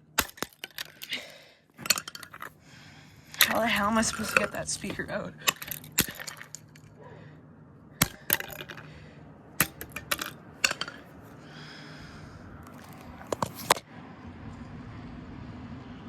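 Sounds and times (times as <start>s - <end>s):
plastic and metal parts clinking: 0.0s - 2.6s, 3.3s - 7.0s, 8.0s - 9.0s, 9.6s - 11.4s, 12.6s - 13.8s.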